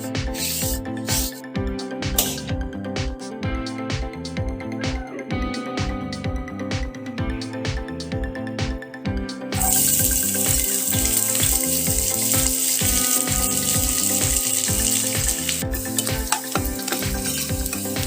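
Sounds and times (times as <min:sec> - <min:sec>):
background music with beat: 0:00.0 - 0:18.0
food sizzling in oil: 0:09.6 - 0:18.0.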